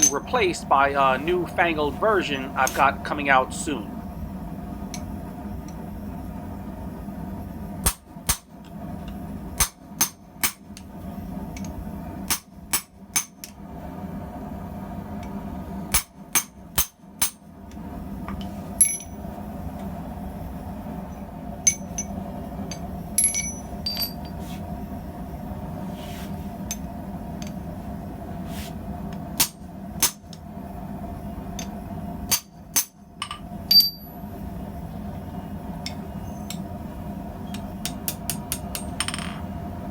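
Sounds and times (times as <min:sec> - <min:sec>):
hammer striking steel on anvil: 0:00.0 - 0:00.4, 0:09.6 - 0:10.6, 0:12.3 - 0:13.5, 0:29.4 - 0:30.3, 0:32.3 - 0:34.1
steady hum: 0:00.0 - 0:39.9
ringing clinks of metal: 0:18.8 - 0:19.2, 0:23.2 - 0:24.4, 0:33.2 - 0:34.2.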